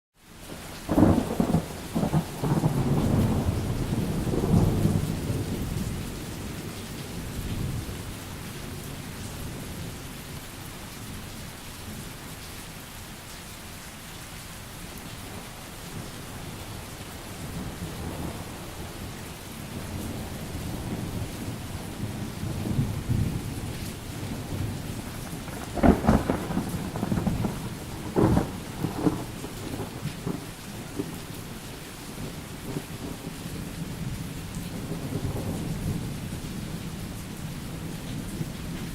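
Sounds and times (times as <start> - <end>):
steady rain: 0.2 - 38.9
crackling thunderclap: 0.8 - 8.8, 15.2 - 38.9
rolling thunder: 0.9 - 8.1, 16.4 - 31.6.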